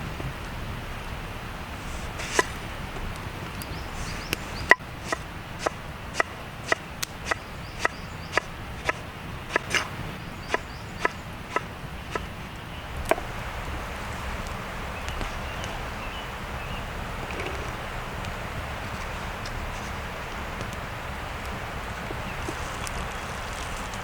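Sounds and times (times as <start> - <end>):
knife chopping vegetables: 4.7 - 12.3.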